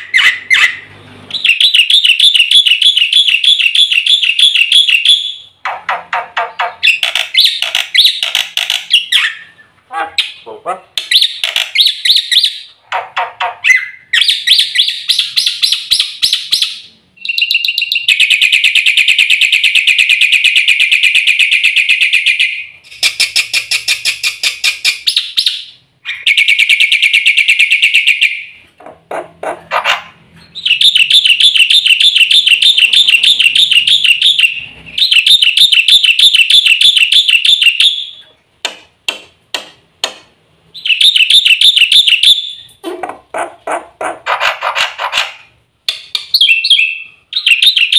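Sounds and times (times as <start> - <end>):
bird singing rattling notes: 0.0 - 10.4, 13.4 - 28.6, 29.6 - 38.2, 40.8 - 42.8
bird chirping: 0.0 - 38.4, 40.7 - 47.9.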